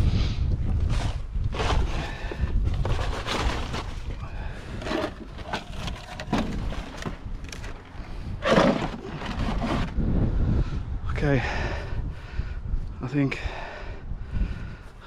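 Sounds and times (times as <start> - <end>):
junk knocking and clattering: 1.5 - 10.0.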